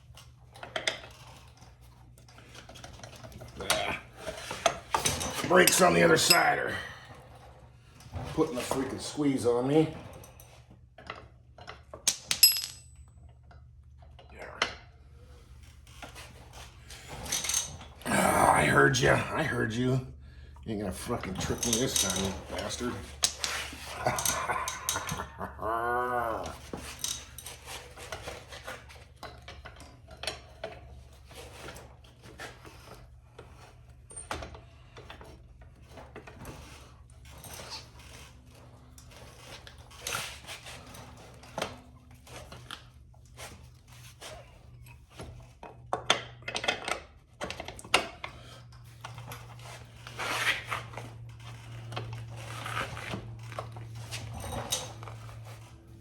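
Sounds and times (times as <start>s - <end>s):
hand tools clinking on metal: 3.6s - 6.9s, 12.1s - 13.0s, 21.0s - 25.5s.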